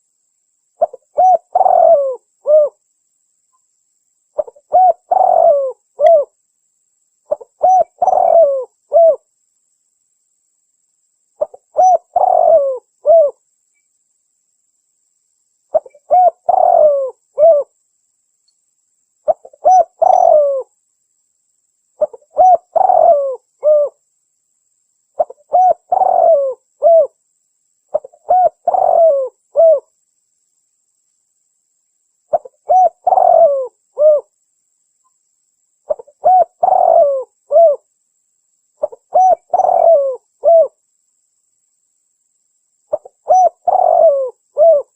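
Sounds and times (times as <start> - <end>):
dove cooing: 0.8 - 2.8, 4.4 - 6.3, 7.3 - 9.2, 11.4 - 13.4, 15.7 - 17.7, 19.3 - 20.7, 22.0 - 24.0, 25.2 - 27.2, 27.9 - 29.9, 32.3 - 34.3, 35.9 - 37.9, 38.8 - 40.8, 42.9 - 44.9.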